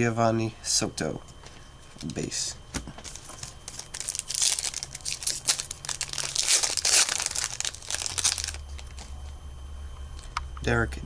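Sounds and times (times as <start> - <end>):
plastic wrapper tearing and crinkling: 3.0 - 9.3.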